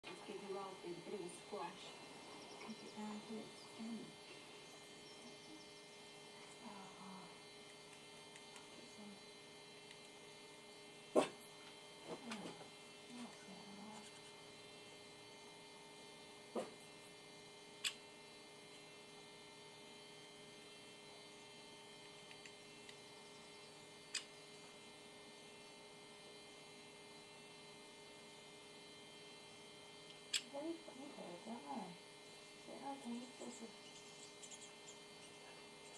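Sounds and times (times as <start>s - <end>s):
electrical hum: 0.0s - 35.9s.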